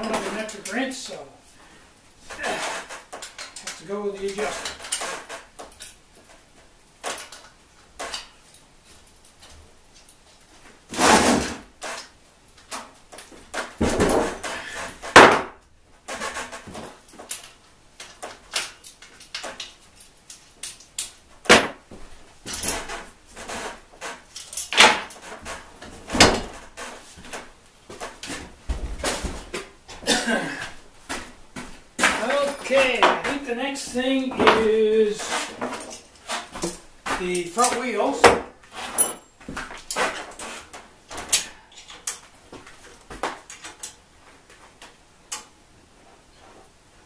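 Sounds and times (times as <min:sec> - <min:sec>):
wrench clanking on metal parts: 0:02.3 - 0:06.0, 0:22.4 - 0:29.3, 0:32.0 - 0:40.4, 0:41.1 - 0:42.3.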